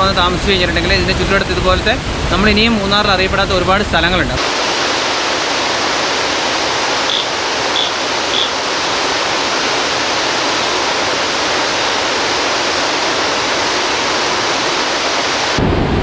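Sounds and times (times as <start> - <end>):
waterfall roaring: 4.3 - 15.8.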